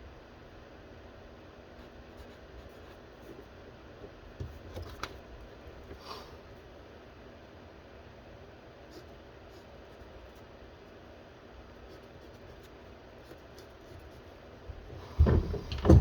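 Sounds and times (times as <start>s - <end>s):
steady low hum: 0.0s - 16.0s
small taps and knocks: 15.0s - 16.0s.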